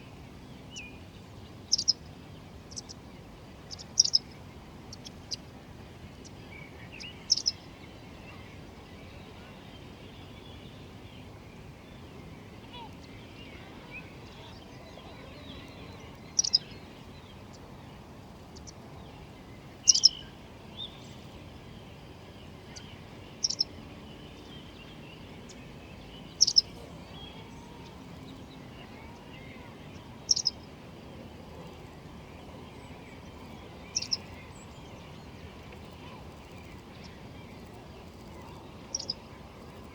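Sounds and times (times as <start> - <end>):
faint bird chirps: 3.7 - 4.3, 7.0 - 7.6, 12.6 - 17.6, 19.9 - 21.2, 22.7 - 23.7, 26.3 - 28.0, 28.7 - 30.6, 32.9 - 34.8, 38.3 - 39.3.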